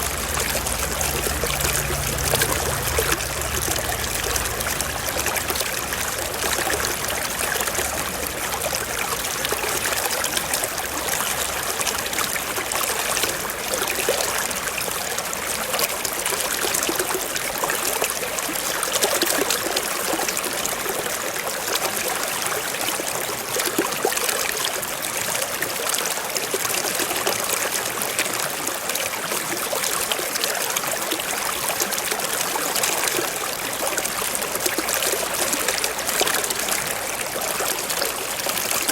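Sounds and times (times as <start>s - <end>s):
waterfall splashing and flowing: 0.0s - 12.8s.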